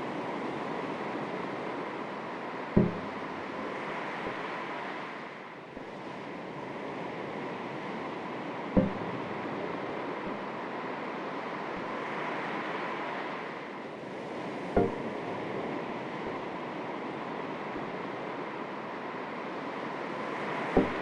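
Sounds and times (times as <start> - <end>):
small waves lapping: 0.0 - 21.0
low thumps: 2.8 - 4.4, 8.8 - 9.6.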